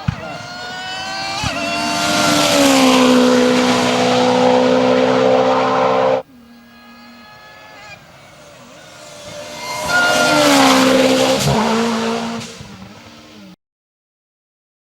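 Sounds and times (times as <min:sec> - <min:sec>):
rally car engine passing by: 0:00.1 - 0:06.3, 0:07.2 - 0:13.6.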